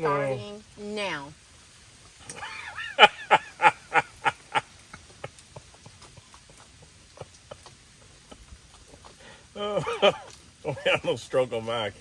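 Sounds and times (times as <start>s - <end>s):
person laughing: 2.3s - 5.3s, 9.6s - 11.1s.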